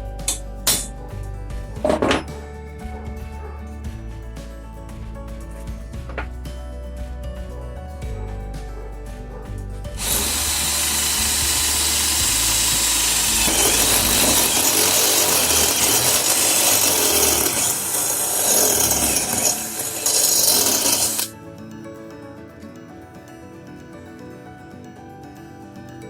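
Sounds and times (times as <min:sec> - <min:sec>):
cordless drill boring: 0:10.0 - 0:21.3.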